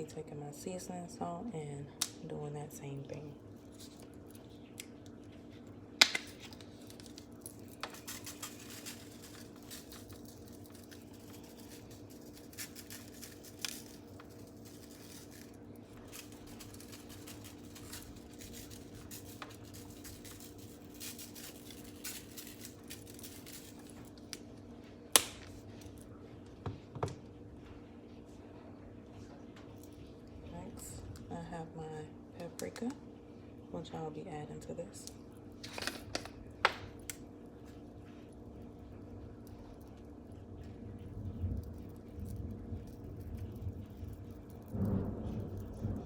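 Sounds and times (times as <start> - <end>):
steady low hum: 0.0 - 46.0
salt shaker rattling: 6.2 - 24.3.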